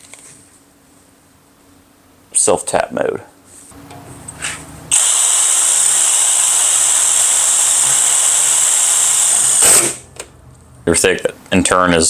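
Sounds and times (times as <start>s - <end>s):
impact driver whine: 4.9s - 10.1s.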